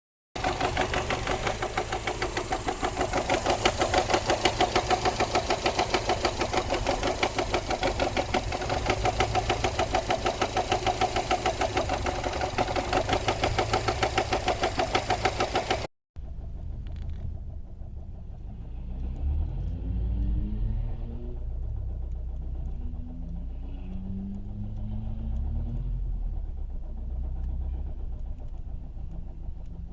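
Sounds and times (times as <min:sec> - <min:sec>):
rhythmic rattling clatter: 0:00.4 - 0:19.1
car engine running: 0:00.4 - 0:29.9.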